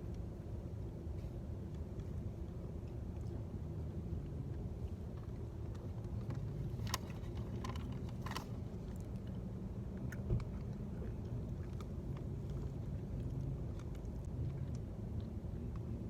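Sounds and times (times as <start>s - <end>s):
light clicks and rustles: 5.0s - 14.8s.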